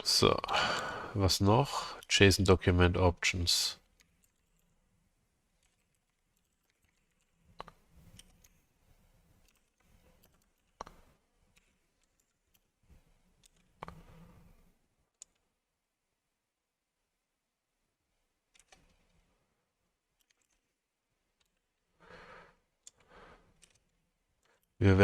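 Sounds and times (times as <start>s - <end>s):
computer keyboard clicks: 5.6s - 8.6s, 9.4s - 12.7s, 18.5s - 19.1s, 20.2s - 20.7s, 22.8s - 24.7s.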